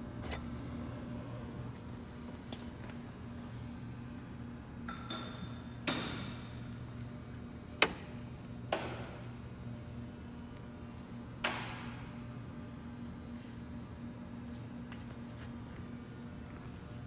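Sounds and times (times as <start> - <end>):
electrical hum: 0.0 - 4.8.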